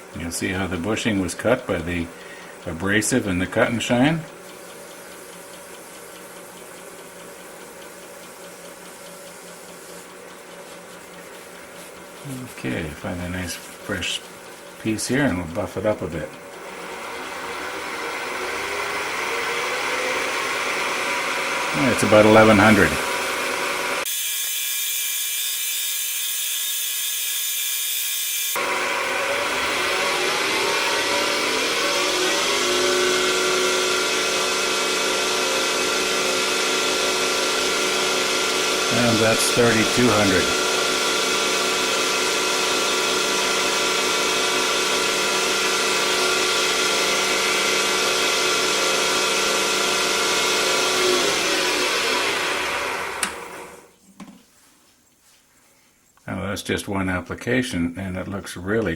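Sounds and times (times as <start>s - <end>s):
wood lathe humming and hissing: 0.0s - 53.9s
faint regular ticks: 3.8s - 12.3s.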